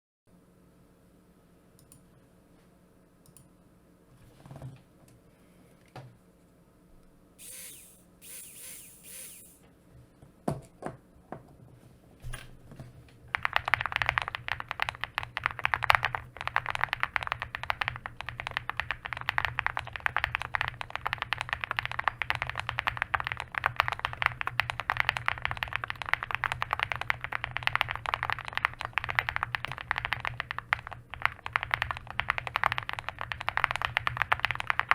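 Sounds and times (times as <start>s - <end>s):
mechanical keyboard typing: 7.4s - 9.6s, 13.3s - 34.9s.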